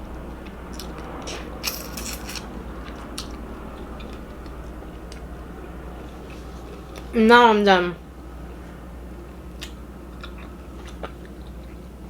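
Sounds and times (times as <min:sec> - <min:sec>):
person chewing food: 0:09.5 - 0:11.9.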